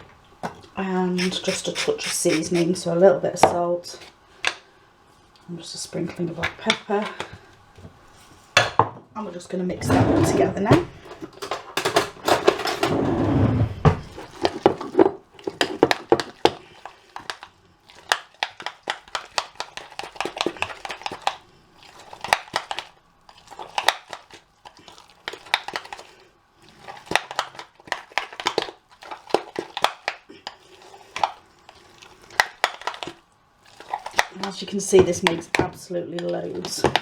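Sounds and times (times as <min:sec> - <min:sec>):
spoon scraping in a bowl: 0:01.2 - 0:02.8.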